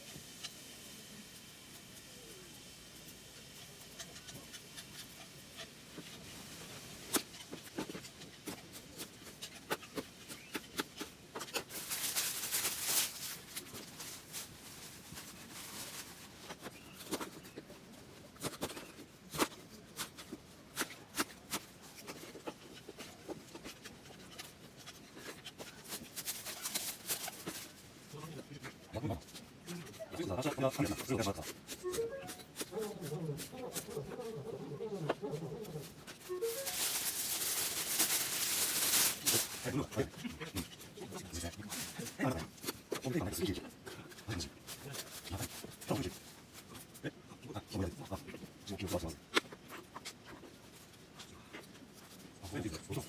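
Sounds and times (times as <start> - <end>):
utensils clicking and tapping: 3.0 - 12.3, 28.6 - 34.4.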